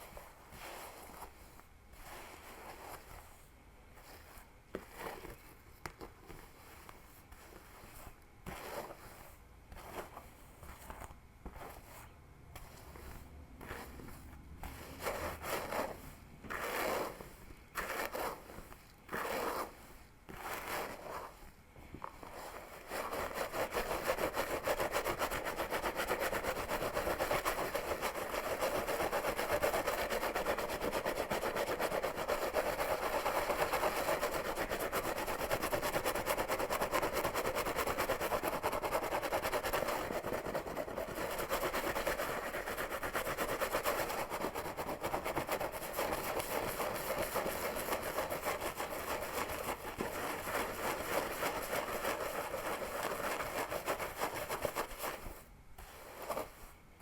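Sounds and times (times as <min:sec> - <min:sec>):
fingers scratching through hair: 0:14.7 - 0:21.4, 0:22.0 - 0:56.7.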